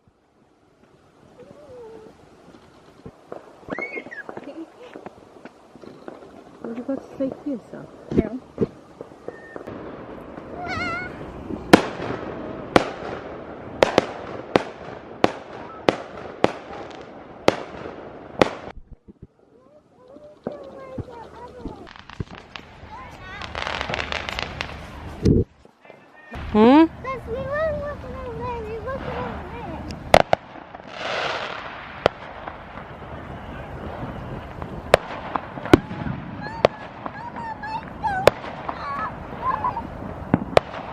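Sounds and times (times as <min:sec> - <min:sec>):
fireworks crackling: 0:00.0 - 0:40.9
fireworks bangs: 0:00.8 - 0:40.9
hissing rush: 0:19.4 - 0:40.9.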